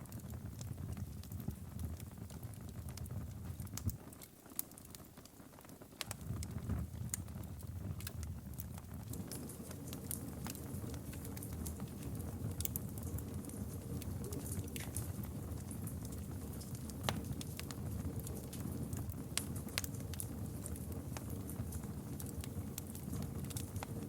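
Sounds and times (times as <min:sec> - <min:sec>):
campfire crackles and pops: 0:00.0 - 0:24.0
flames rushing: 0:06.0 - 0:24.0.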